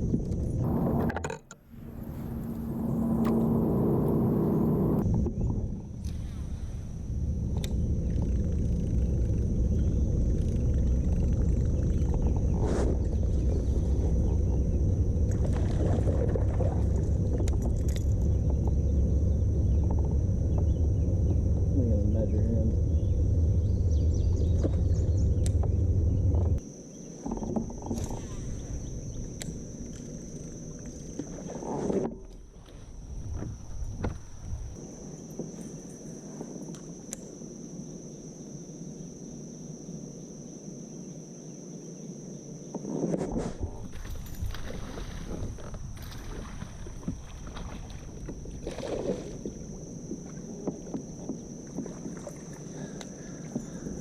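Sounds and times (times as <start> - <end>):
night insects droning: 0.0 - 54.0
thin high whine: 0.6 - 5.0
water rumbling against kayak hull: 7.1 - 26.6, 42.8 - 54.0.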